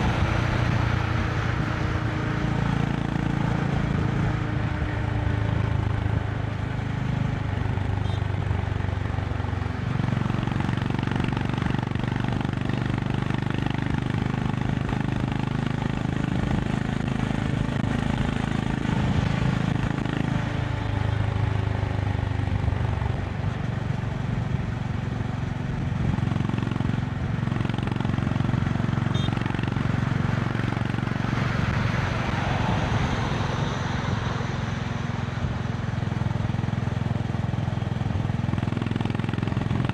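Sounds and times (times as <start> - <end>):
motorcycle engine running: 0.0 - 39.9
wind: 0.0 - 39.9
road hiss: 30.0 - 36.2.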